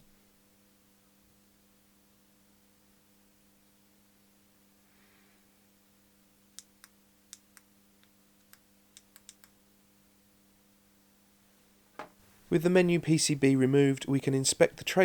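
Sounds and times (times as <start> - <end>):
faint steady hum: 0.0 - 15.0
small sharp clicks: 6.6 - 9.6.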